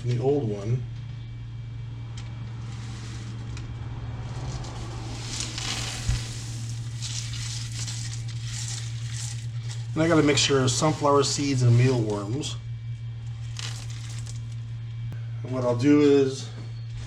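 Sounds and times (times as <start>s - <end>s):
birdseed rustling and crackling: 2.6s - 12.5s, 13.2s - 14.7s.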